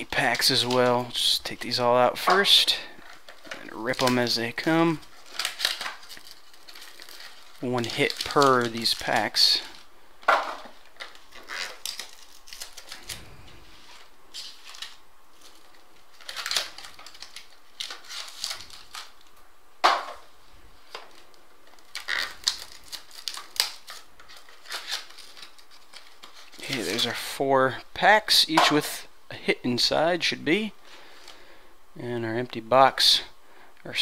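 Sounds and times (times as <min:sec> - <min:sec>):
foil packs rustling and crinkling: 0:00.0 - 0:09.9, 0:10.5 - 0:19.3, 0:20.8 - 0:27.4.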